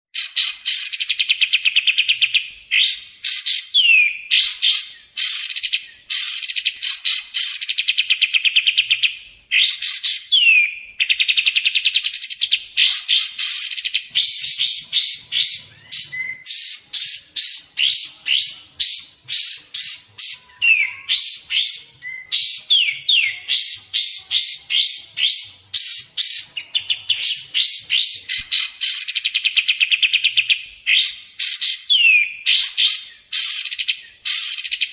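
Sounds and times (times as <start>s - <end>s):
bird chattering trills: 0.2s - 34.9s.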